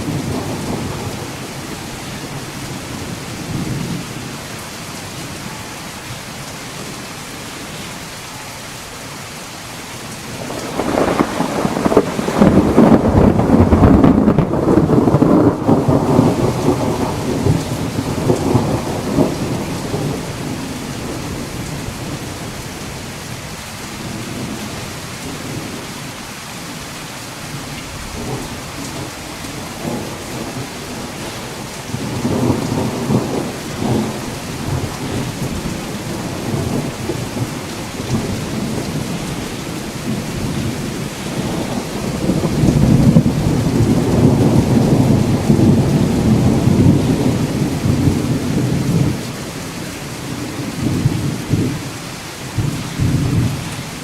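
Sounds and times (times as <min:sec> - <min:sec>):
rolling thunder: 0:00.0 - 0:04.3, 0:10.3 - 0:23.0, 0:27.9 - 0:51.9, 0:52.5 - 0:54.0
steady rain: 0:00.0 - 0:54.0.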